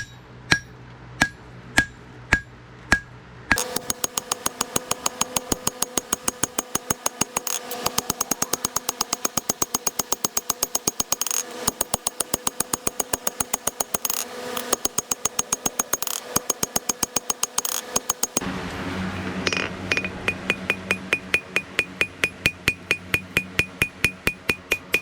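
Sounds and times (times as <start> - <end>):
hammer blows on steel over anvil: 19.2 - 25.0.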